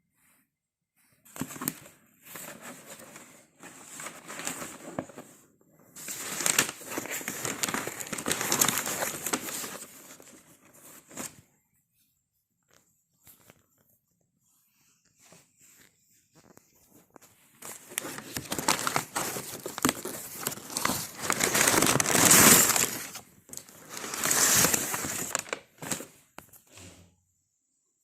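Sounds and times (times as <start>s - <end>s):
packaging crinkling and rustling: 1.4s - 5.4s, 6.0s - 11.4s, 17.0s - 26.2s.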